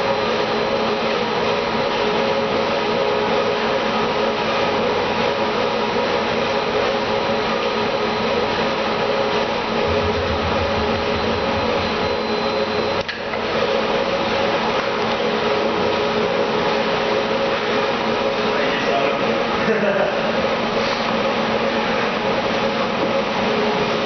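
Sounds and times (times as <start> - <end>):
machine motor humming: 9.3 - 14.4
low throb: 9.7 - 13.1.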